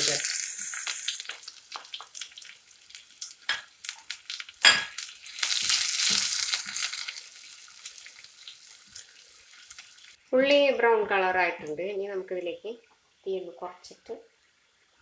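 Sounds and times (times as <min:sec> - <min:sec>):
loud sizzle: 0:00.0 - 0:10.2
oil crackling in a pan: 0:00.0 - 0:10.2.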